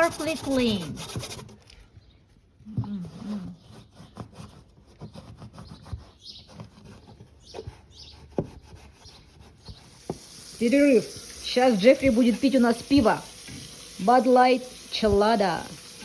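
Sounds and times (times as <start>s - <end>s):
rubbing and scraping handling noise: 0.0s - 11.4s.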